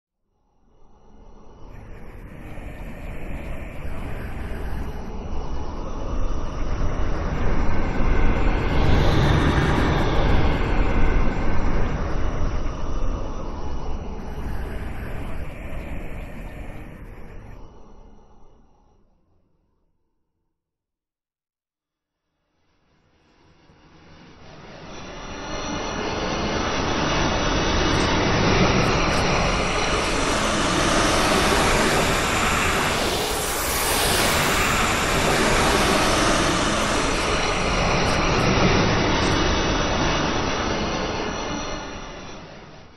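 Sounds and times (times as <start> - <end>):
sci-fi space whoosh: 23.4 - 42.9.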